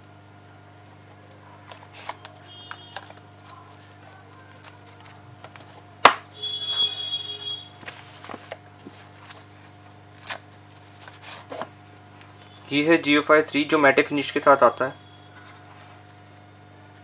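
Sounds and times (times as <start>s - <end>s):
steady low hum: 0.0s - 17.0s
packaging rustling: 1.5s - 6.2s, 7.8s - 12.6s.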